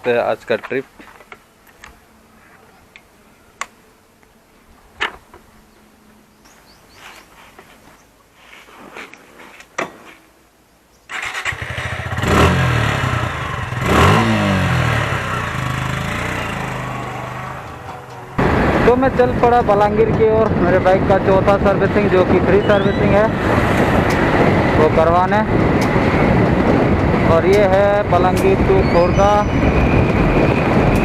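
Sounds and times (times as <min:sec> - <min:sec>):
motorcycle engine starting and revving: 0:11.1 - 0:18.9.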